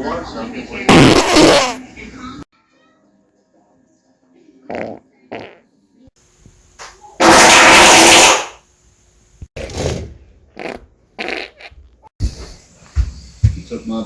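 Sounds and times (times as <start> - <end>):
person farting: 0.9 - 1.8, 4.7 - 5.6, 7.2 - 8.6, 10.5 - 12.0.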